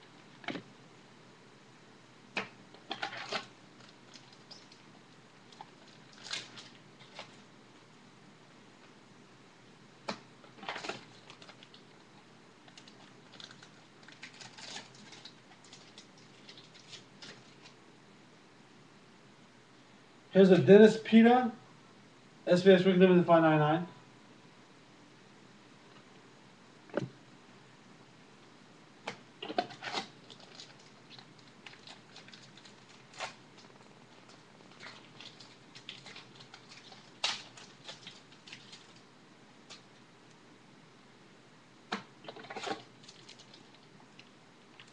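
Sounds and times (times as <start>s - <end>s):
cards and wrappers crinkling: 5.5s - 7.4s, 12.6s - 17.8s, 29.4s - 39.0s.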